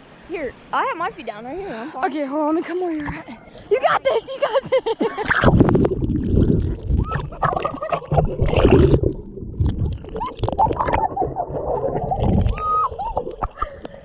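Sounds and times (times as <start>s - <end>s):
low uneven rumble: 0.0s - 14.0s
water sloshing from wading: 4.7s - 14.0s.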